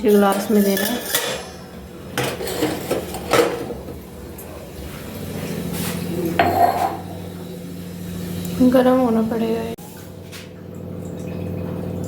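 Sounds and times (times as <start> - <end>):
dishes and utensils clinking: 0.0 - 4.0, 5.8 - 7.2
steady low hum: 0.0 - 12.0.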